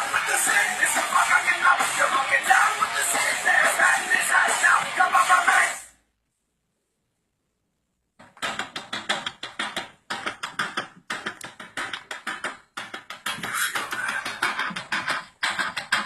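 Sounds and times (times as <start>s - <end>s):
heavy metal music: 0.0s - 5.9s.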